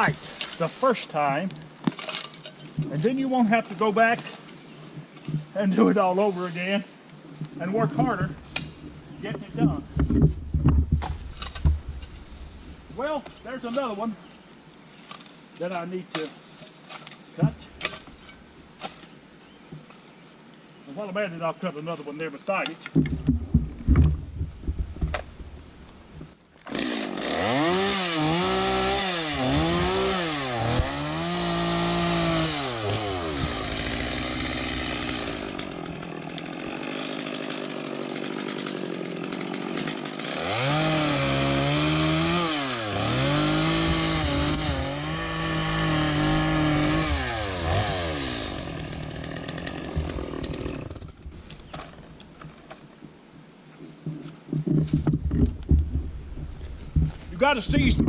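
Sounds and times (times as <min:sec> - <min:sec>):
chainsaw cutting branches: 0:26.6 - 0:52.2.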